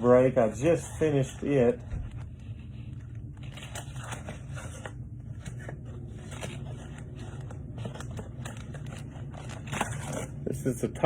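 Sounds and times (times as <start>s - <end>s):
cards and foil wrappers crinkling: 0.0s - 11.0s
steady low hum: 0.0s - 11.0s.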